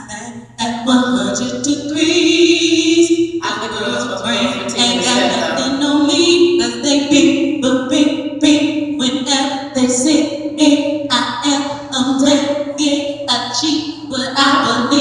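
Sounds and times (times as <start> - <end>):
person singing long held notes: 0.6 - 10.3.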